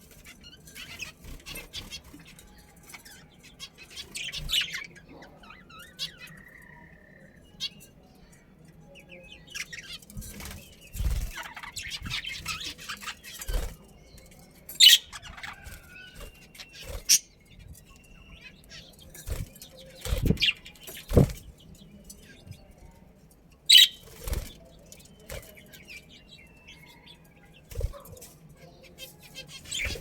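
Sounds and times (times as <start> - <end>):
budgerigars chirping: 14.8 - 19.1, 19.7 - 21.2, 23.7 - 27.0, 29.3 - 30.0
dull thumps of birds moving: 19.2 - 21.5.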